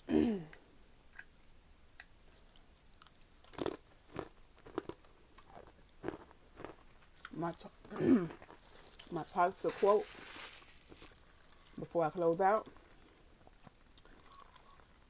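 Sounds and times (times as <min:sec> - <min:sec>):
person chewing fried food: 0:02.0 - 0:09.2, 0:10.4 - 0:11.8, 0:12.6 - 0:15.0.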